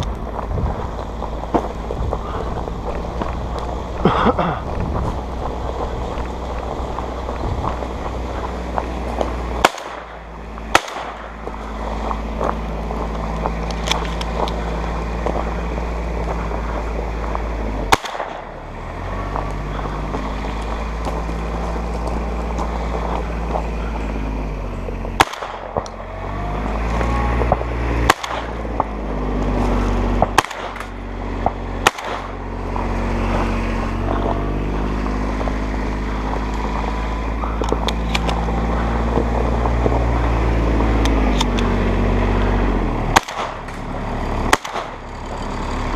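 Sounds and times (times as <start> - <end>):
low engine hum: 0.0 - 45.9
shotgun shots: 9.6 - 11.5, 17.9 - 18.6, 25.2 - 25.9, 28.0 - 28.6, 30.2 - 31.0, 31.8 - 32.4, 43.1 - 43.8, 44.5 - 45.0.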